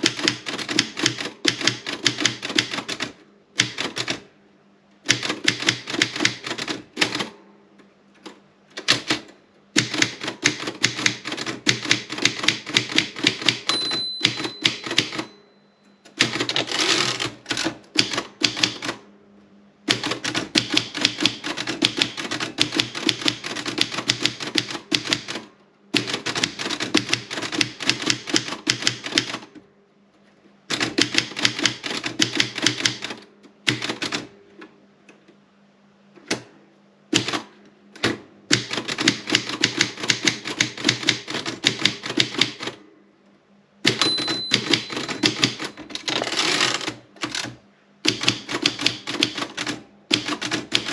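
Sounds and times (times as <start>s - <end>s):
typewriter keys striking: 0.0s - 4.2s, 5.1s - 7.3s, 8.8s - 15.3s, 16.1s - 19.0s, 19.9s - 29.5s, 30.7s - 34.3s, 37.2s - 42.8s, 43.9s - 50.9s
typewriter bell ringing: 13.6s - 15.9s, 43.9s - 46.8s.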